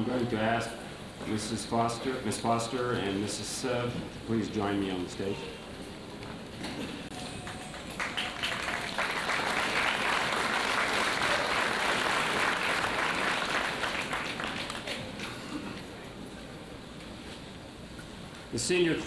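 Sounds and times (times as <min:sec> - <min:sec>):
audience applauding: 0:07.1 - 0:15.2.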